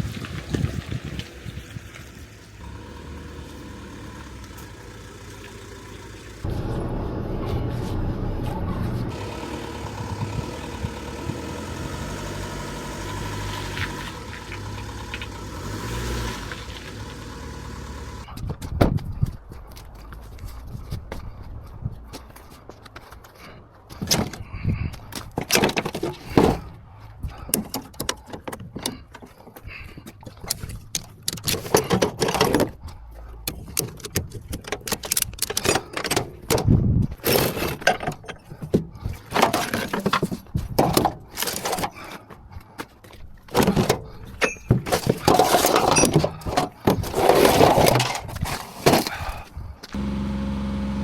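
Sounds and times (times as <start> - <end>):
knocks clanks and rattles: 18.2 - 49.6.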